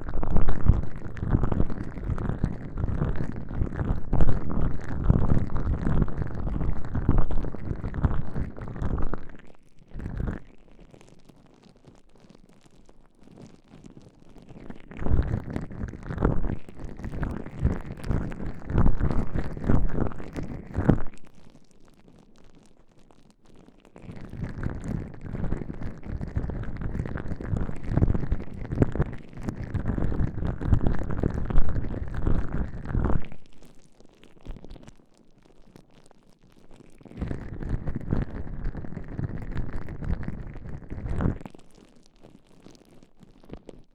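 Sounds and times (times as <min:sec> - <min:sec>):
slippery rubbing on microphones: 0:16.2 - 0:21.4, 0:24.2 - 0:33.8.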